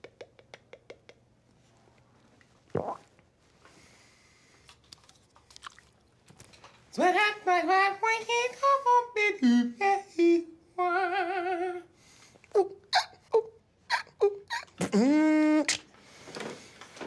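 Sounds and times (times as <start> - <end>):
mouth clicks: 0.0 - 1.2, 2.7 - 3.1.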